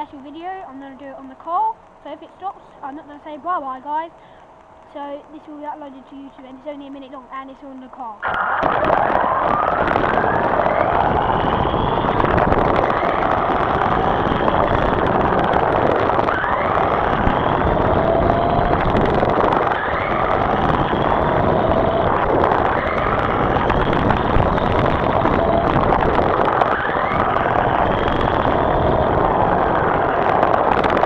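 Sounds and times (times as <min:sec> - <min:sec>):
remote control car motor whine: 0:08.2 - 0:31.0.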